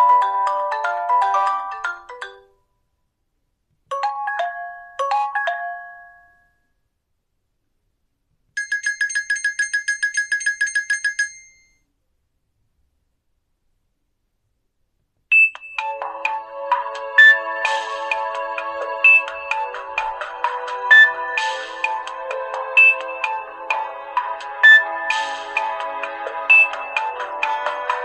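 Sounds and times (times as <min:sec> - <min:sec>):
phone ringtone melody: 0:00.0 - 0:02.6, 0:03.9 - 0:06.6, 0:08.6 - 0:11.8, 0:15.3 - 0:28.0
fast high beeping: 0:17.2 - 0:17.6, 0:19.0 - 0:19.8, 0:20.8 - 0:22.0, 0:22.7 - 0:23.6, 0:24.6 - 0:25.2, 0:26.5 - 0:27.2.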